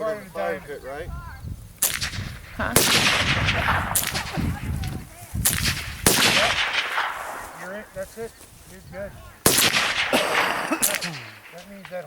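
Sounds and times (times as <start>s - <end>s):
gunshots: 1.8s - 4.7s, 5.4s - 7.8s, 9.4s - 12.0s.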